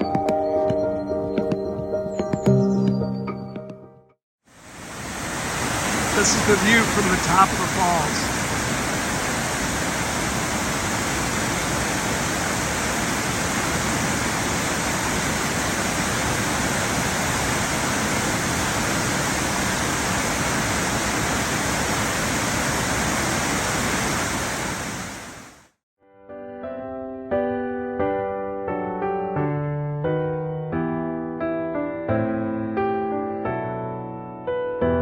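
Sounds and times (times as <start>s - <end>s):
waterfall roaring: 4.6s - 25.6s.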